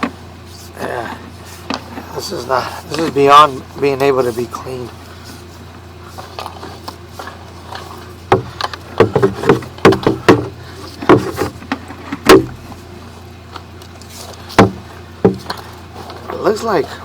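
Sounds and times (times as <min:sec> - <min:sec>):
steady low hum: 0:00.0 - 0:17.0
sewer inspection equipment knocks: 0:08.3 - 0:12.6, 0:14.6 - 0:15.6.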